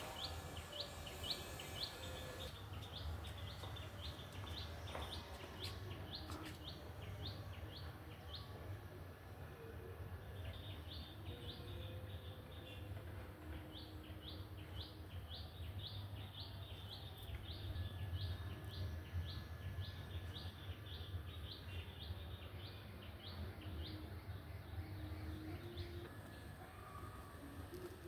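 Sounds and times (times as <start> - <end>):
bird chirping: 0.0 - 8.4.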